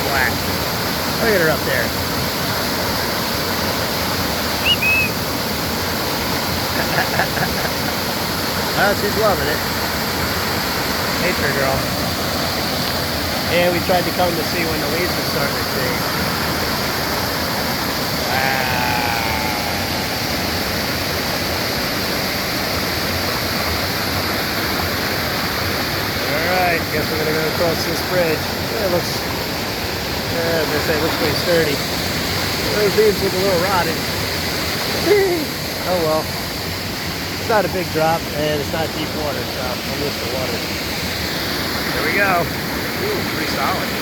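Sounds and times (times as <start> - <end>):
waterfall and creek rushing: 0.0 - 44.0
high chirp: 4.6 - 5.2.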